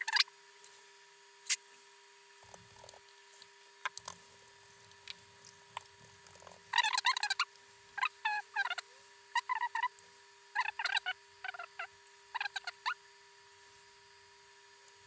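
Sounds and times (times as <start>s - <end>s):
faint steady hum: 0.0s - 15.0s
laptop parts clicking: 3.8s - 7.4s.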